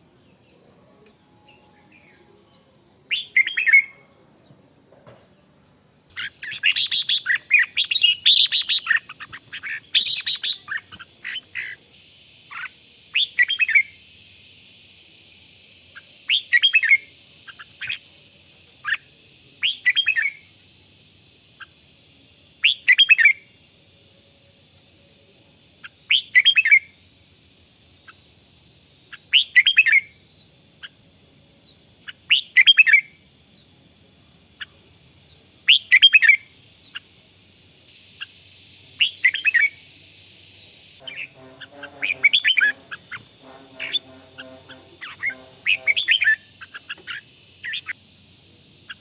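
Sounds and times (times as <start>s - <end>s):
bird singing warbled phrases: 3.1s - 4.0s, 6.1s - 11.9s, 12.5s - 14.0s, 16.0s - 20.4s, 28.8s - 33.6s, 34.6s - 37.2s, 39.0s - 39.8s, 40.4s - 48.0s
steady high-pitched tone: 40.9s - 46.6s.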